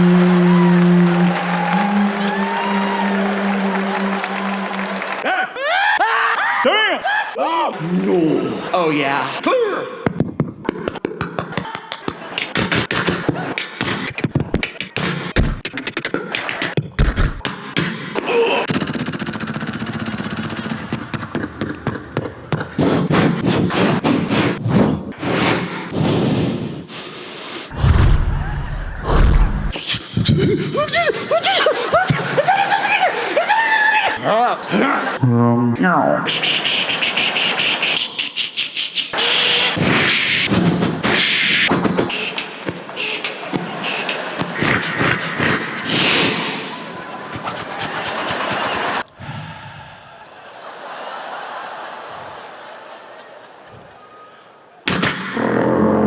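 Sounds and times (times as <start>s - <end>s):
man beatboxing into microphone: 10.0s - 21.3s, 29.7s - 32.5s, 36.1s - 49.1s, 54.9s - 56.0s.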